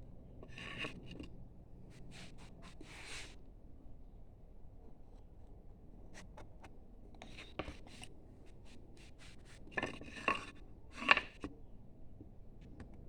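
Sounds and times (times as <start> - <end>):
carving tool scraping wood: 0.4 - 1.2, 8.7 - 11.4.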